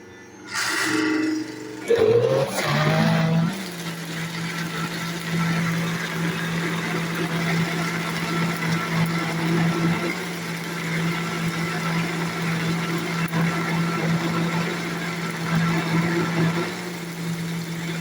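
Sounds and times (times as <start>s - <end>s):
blender motor running: 0.5s - 18.0s.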